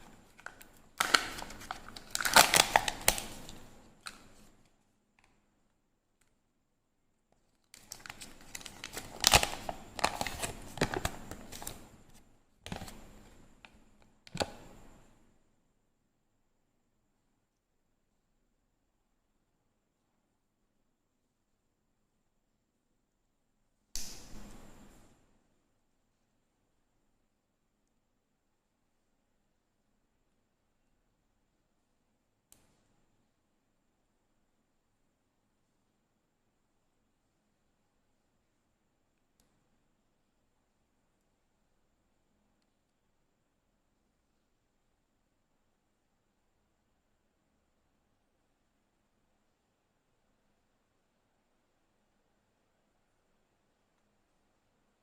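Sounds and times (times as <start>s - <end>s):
candy wrapper crinkling: 0.0s - 4.4s, 7.8s - 11.8s
wrapper ripping: 0.4s - 4.2s, 7.8s - 11.8s.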